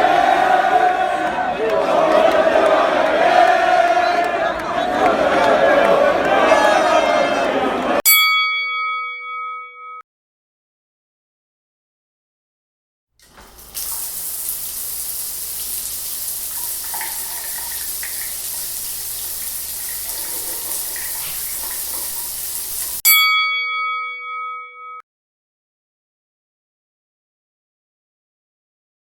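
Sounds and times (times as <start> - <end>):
bell-like chime: 8.1 - 10.0, 23.1 - 25.0
tap water running: 13.2 - 23.0.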